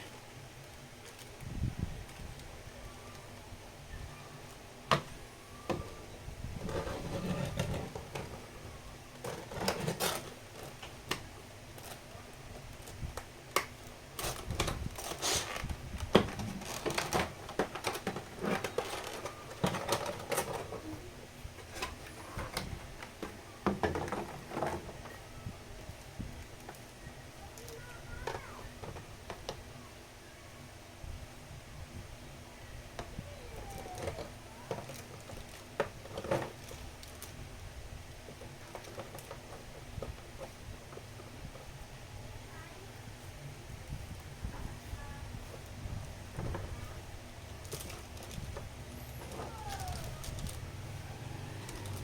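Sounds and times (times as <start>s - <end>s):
cardboard and plastic packaging rustling: 4.4s - 26.9s, 33.0s - 37.5s, 38.2s - 52.0s.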